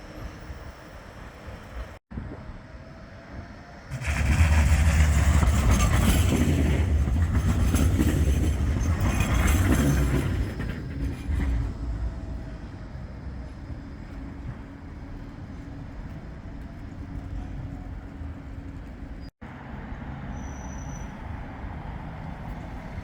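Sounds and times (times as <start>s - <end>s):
tram passing with low rumble: 0.0s - 23.0s.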